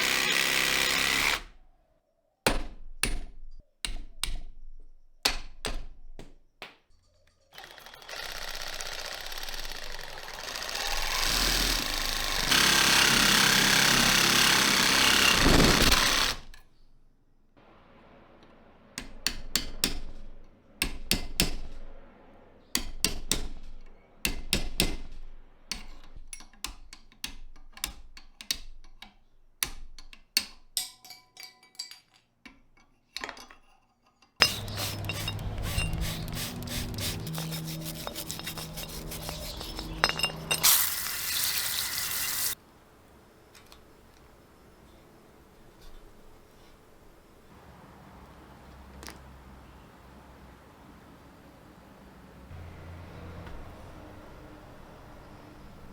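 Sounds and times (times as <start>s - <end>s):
hammer striking metal: 19.0s - 22.1s, 22.7s - 27.0s, 34.4s - 41.0s.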